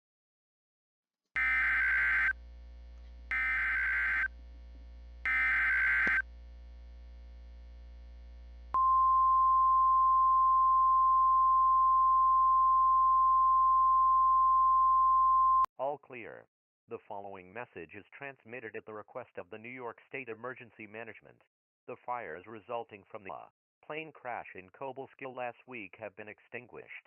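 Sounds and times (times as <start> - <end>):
digital data bursts: 1.4 - 2.4, 3.3 - 4.3, 5.3 - 6.2
steady single-pitch alert tone: 1.4 - 2.4, 3.3 - 4.3, 5.2 - 6.2, 8.8 - 15.7.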